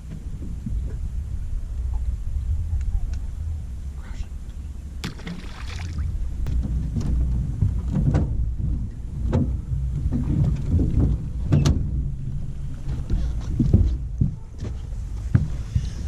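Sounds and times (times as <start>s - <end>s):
boat engine low rumble: 0.0s - 16.0s
knocks and clunks: 6.4s - 16.0s.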